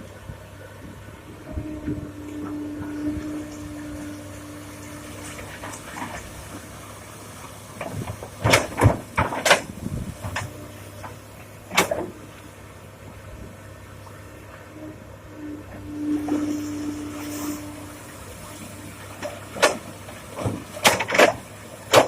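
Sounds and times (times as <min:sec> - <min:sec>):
excavator engine running: 0:00.0 - 0:22.0
rocks crashing into truck bed: 0:07.8 - 0:10.5.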